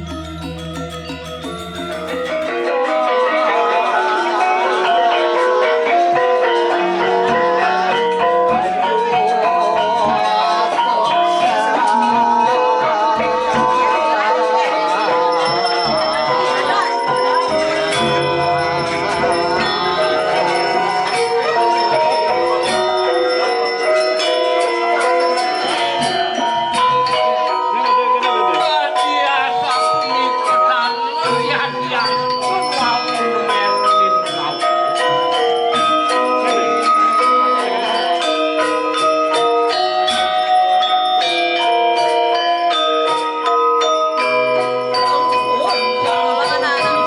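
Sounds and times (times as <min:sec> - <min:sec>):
metallophones playing melody: 0:00.0 - 0:03.1, 0:15.5 - 0:47.0.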